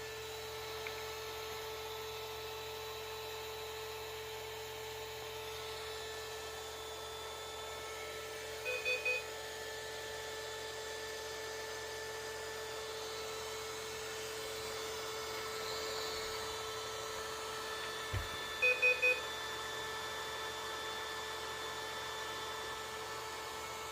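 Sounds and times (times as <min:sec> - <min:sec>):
electric pump motor whine: 0:00.0 - 0:23.9
short electronic beeps: 0:08.7 - 0:09.2.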